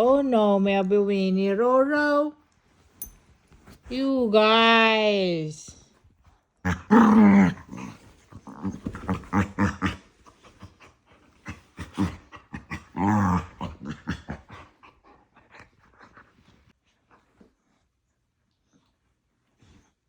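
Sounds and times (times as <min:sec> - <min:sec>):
small dogs growling: 0:06.6 - 0:16.2.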